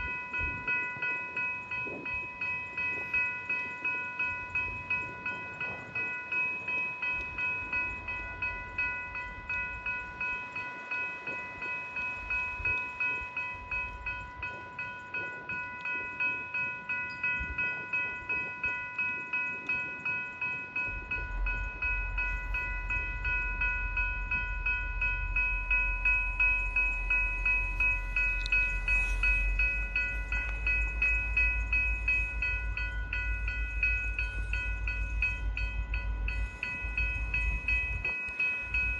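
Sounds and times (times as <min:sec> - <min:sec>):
level crossing bell ringing: 0:00.0 - 0:38.9
low rumble of train: 0:00.0 - 0:38.9.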